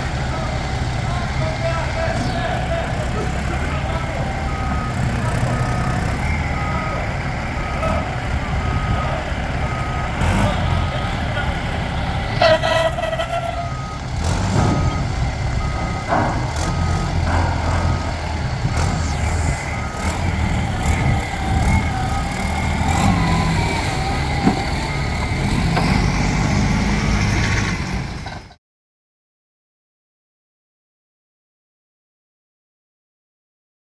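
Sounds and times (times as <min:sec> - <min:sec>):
heavy machine engine running: 0:00.0 - 0:28.6
reversing alarm beeping: 0:03.4 - 0:27.1.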